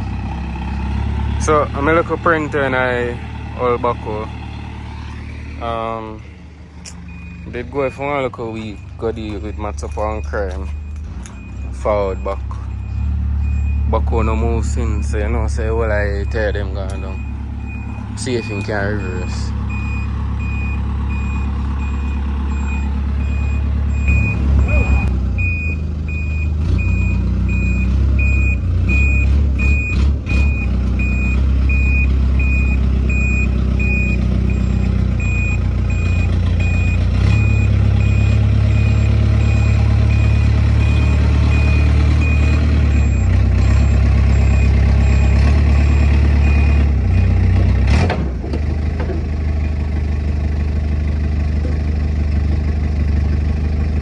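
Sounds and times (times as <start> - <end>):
diesel engine running: 0.0 - 54.0
reversing alarm beeping: 6.8 - 47.5.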